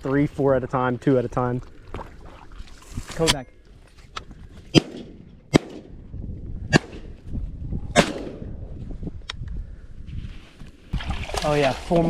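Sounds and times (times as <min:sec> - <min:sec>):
rustling and wading in water: 0:00.0 - 0:07.6, 0:08.8 - 0:12.0
shotgun shots: 0:04.7 - 0:06.0, 0:06.7 - 0:07.1, 0:08.0 - 0:08.5.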